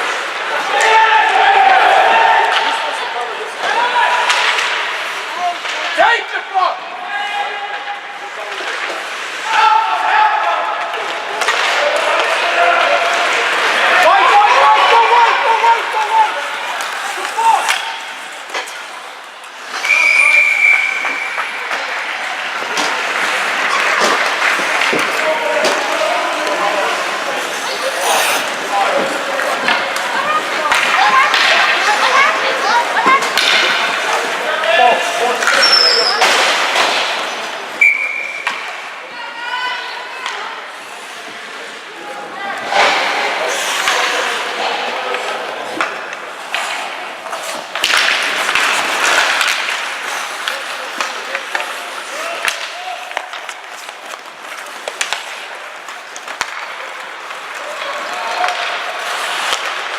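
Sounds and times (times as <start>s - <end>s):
knocks of sticks and puck: 0.0s - 3.0s, 3.6s - 6.2s, 8.5s - 20.0s, 20.7s - 38.9s, 42.6s - 59.9s
crowd noise: 0.0s - 59.9s
spectators' voices: 0.0s - 59.9s
skate blades scraping ice: 11.1s - 37.8s, 40.7s - 59.9s
referee's whistle: 19.8s - 21.4s, 37.8s - 38.4s.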